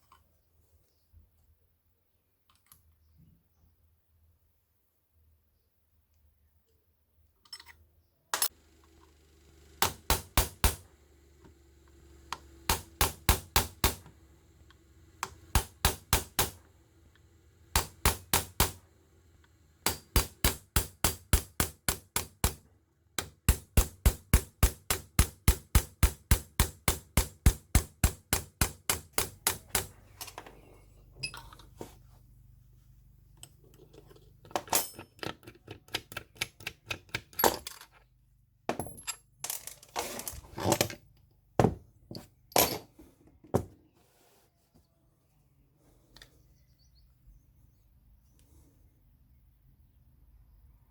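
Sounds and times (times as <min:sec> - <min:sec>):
rapid hammer blows: 0:09.4 - 0:11.1, 0:11.9 - 0:19.0, 0:19.8 - 0:30.0.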